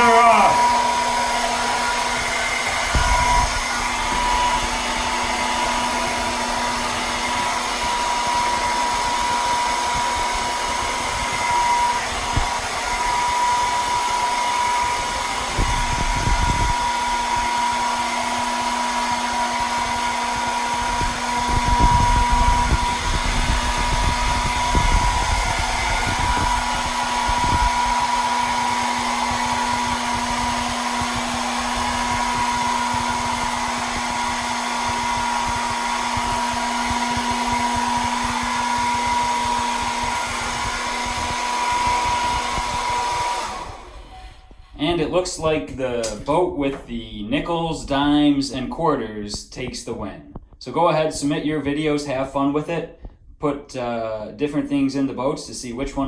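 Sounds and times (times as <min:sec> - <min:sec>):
airflow buffeting rumbles: 0:00.0 - 0:17.7, 0:20.3 - 0:34.4
hair dryer running: 0:00.0 - 0:47.0.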